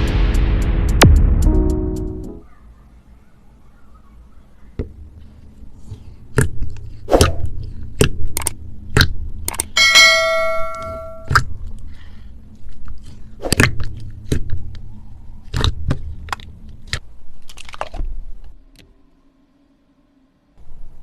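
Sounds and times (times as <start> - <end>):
bell-like ding: 9.8 - 11.3.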